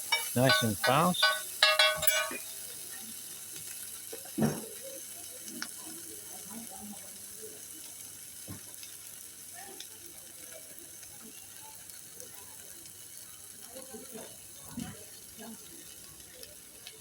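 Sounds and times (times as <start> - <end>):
vegetables sizzling in a pan: 0.0 - 17.0.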